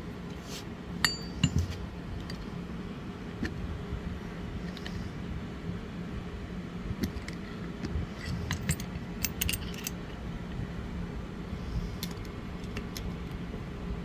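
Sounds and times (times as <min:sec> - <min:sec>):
steady low hum: 0:00.0 - 0:14.0
light metal clicks and clinks: 0:01.0 - 0:02.5, 0:08.2 - 0:10.1.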